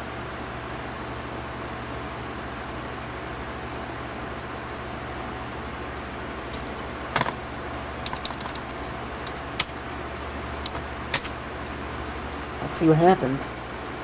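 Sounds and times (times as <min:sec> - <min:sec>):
steady low hum: 0:00.0 - 0:14.0
keyboard keys clicking: 0:08.0 - 0:09.8, 0:10.6 - 0:11.3.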